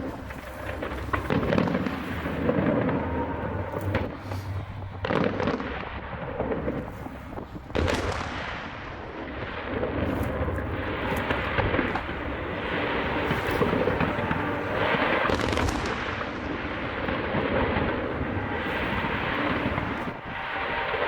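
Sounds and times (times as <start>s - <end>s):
fireworks banging and crackling: 0.0s - 21.0s.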